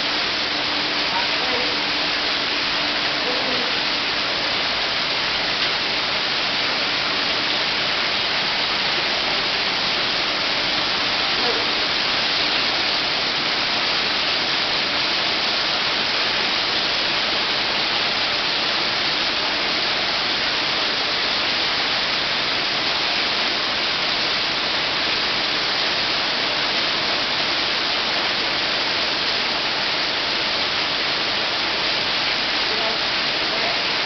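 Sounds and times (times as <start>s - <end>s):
hiss of falling water: 0.0s - 34.0s.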